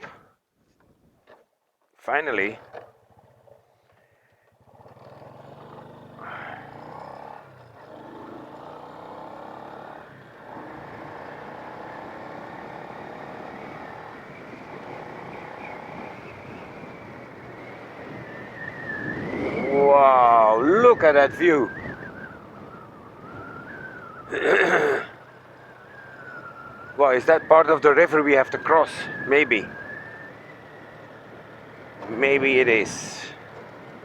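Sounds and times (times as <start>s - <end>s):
motorcycle engine running: 2.6s - 19.7s.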